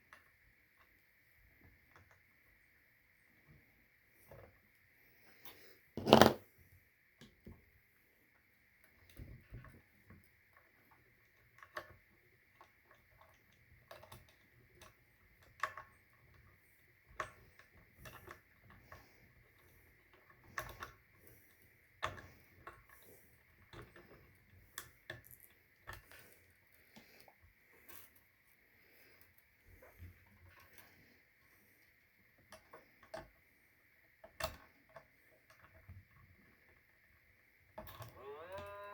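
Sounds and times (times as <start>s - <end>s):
small metal parts clicking: 24.8s - 26.5s.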